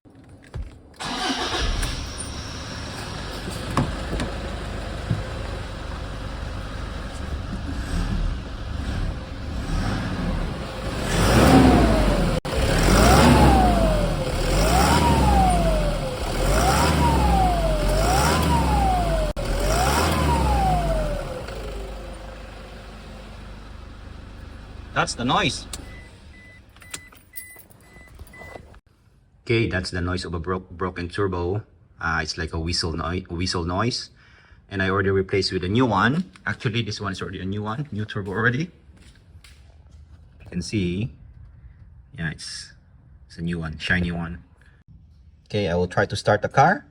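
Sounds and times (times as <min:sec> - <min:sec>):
diesel engine idling and revving: 0:01.0 - 0:27.1.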